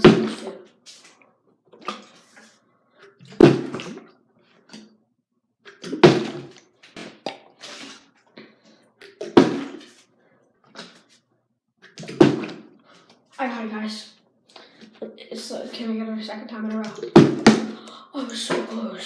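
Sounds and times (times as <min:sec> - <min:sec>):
plastic bottle thudding on towel: 0:03.4 - 0:04.0, 0:12.0 - 0:12.6, 0:17.0 - 0:17.8.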